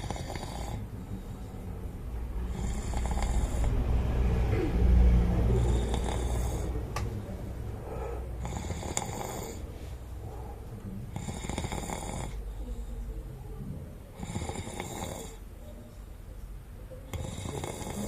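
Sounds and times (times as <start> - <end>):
man snoring: 0.0 - 1.0, 2.5 - 6.8, 7.8 - 9.6, 11.1 - 12.4, 14.2 - 15.4, 17.1 - 18.0.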